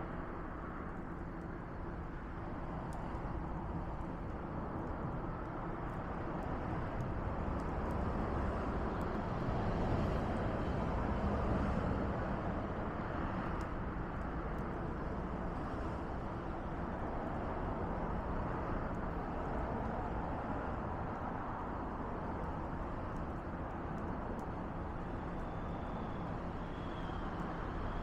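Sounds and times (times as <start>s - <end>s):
faint fire crackles: 0.0s - 28.0s
fire rushing: 13.6s - 28.0s.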